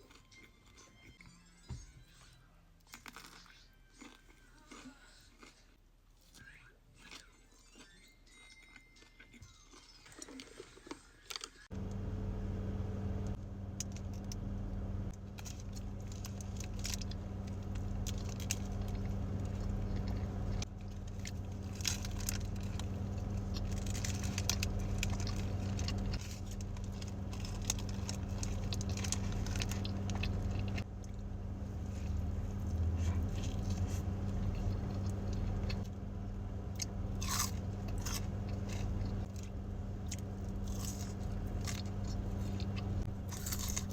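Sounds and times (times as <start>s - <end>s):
chewing and crunching food: 0.0s - 12.0s, 15.1s - 43.9s
steady low hum: 11.7s - 43.9s.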